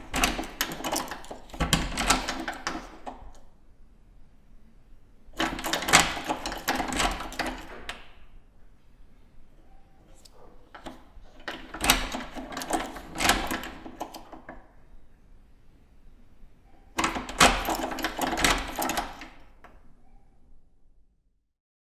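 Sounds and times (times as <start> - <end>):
keys rattling in door lock: 0.0 - 3.6, 5.3 - 8.3, 10.7 - 14.7, 16.9 - 20.2
lock clicking: 0.0 - 3.6, 5.4 - 8.3, 10.2 - 14.8, 16.9 - 20.2.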